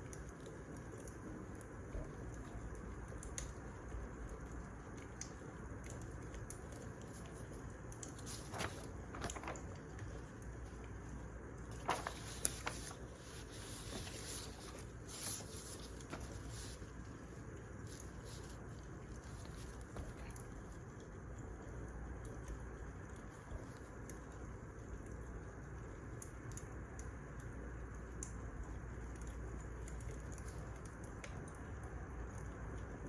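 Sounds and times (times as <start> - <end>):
wood fire crackling and popping: 0.0 - 25.2.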